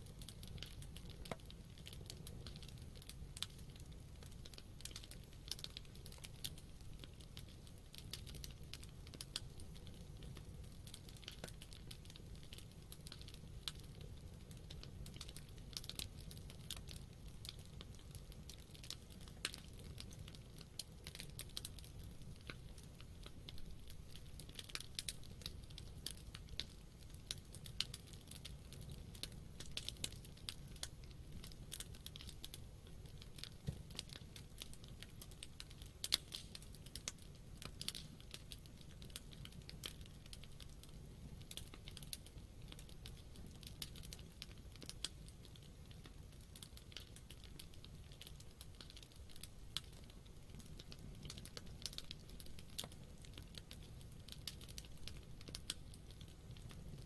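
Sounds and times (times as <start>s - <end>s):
campfire crackling and popping: 0.0s - 57.0s.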